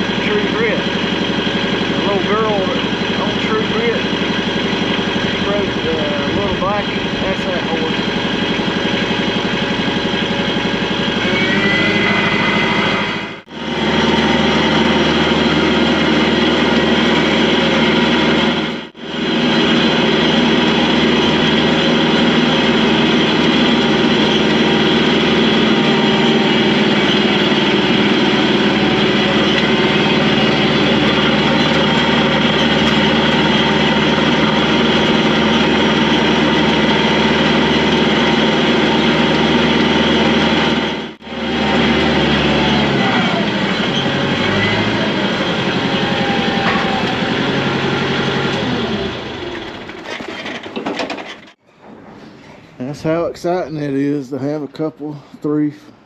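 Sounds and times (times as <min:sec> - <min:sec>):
vehicle engine running: 0:00.0 - 0:51.6.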